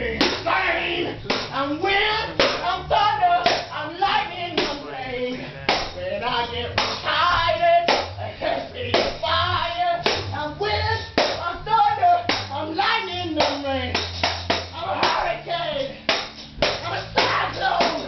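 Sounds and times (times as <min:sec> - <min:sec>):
person singing: 0:00.0 - 0:14.1, 0:14.7 - 0:18.0
heavy drum beat: 0:16.0 - 0:18.0.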